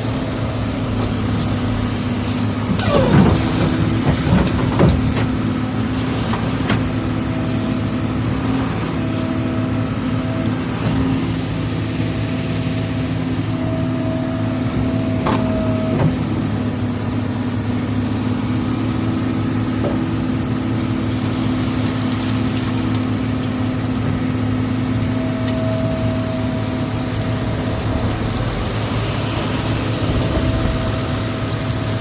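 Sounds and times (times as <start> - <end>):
excavator diesel engine running: 0.0 - 32.0
thin whine: 24.5 - 31.7.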